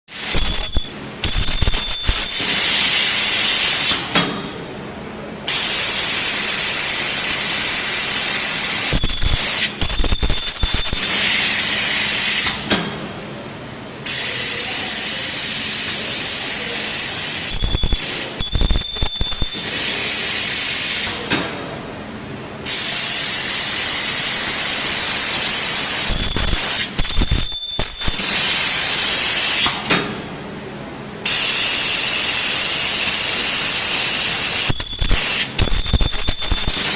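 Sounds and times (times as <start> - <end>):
machine hissing loudly: 5.5 - 12.6, 22.7 - 29.8.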